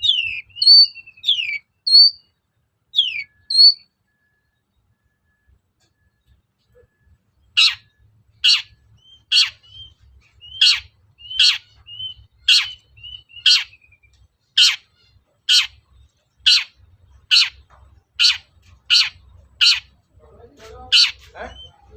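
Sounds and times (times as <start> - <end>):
bird harsh scolding calls: 7.4 - 20.0, 20.8 - 21.9.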